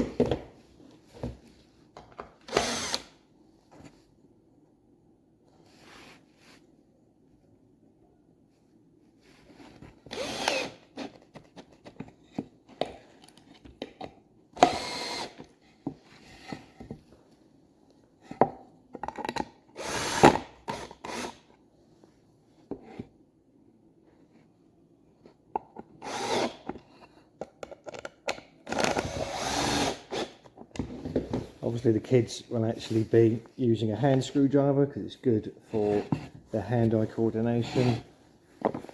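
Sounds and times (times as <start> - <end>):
power drill driving screws: 2.5 - 3.1, 10.1 - 10.9, 14.6 - 15.4, 19.8 - 21.4, 26.0 - 26.6, 28.7 - 30.4.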